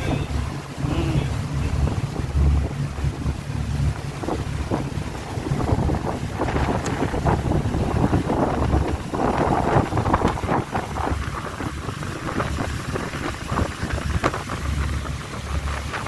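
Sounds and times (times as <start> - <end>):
boat engine rumble: 0.0 - 16.0
water rushing: 0.0 - 16.0
wind buffeting microphone: 0.0 - 16.0.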